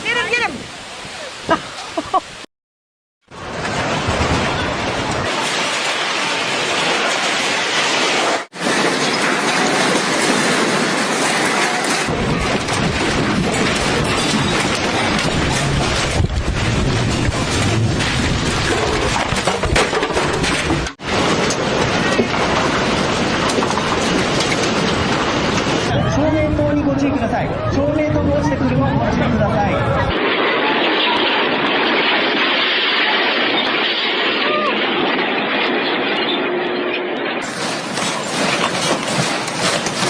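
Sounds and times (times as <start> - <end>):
heavy rain: 0.0 - 2.5, 3.3 - 26.0, 37.4 - 40.0
deep low rumble: 11.9 - 36.5.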